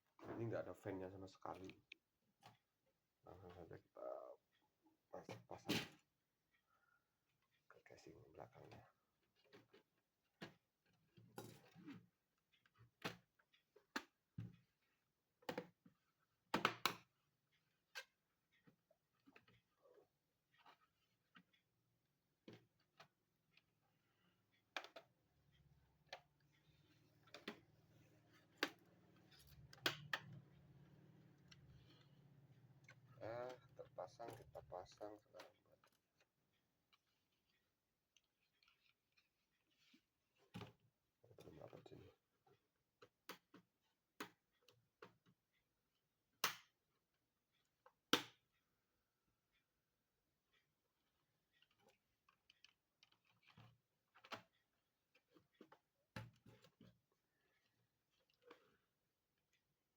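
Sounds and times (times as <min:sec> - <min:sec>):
faint plastic clicks and taps: 0:01.5 - 0:02.7.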